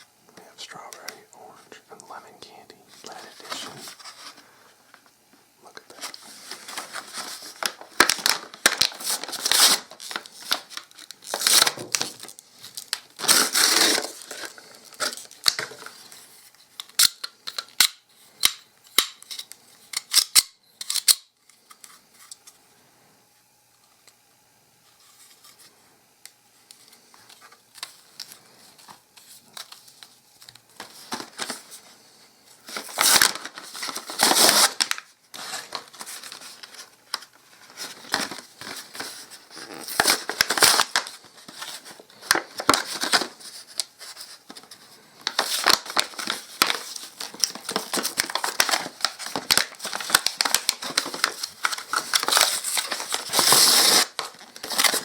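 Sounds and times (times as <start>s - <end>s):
plastic packaging crinkling: 5.8s - 22.3s, 32.6s - 55.0s.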